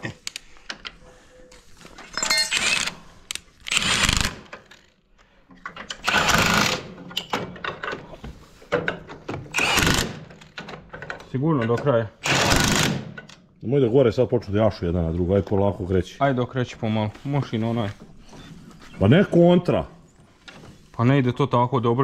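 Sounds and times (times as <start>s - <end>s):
power tool bursts: 3.7s - 4.5s, 6.0s - 6.9s, 9.5s - 10.2s, 12.2s - 13.2s.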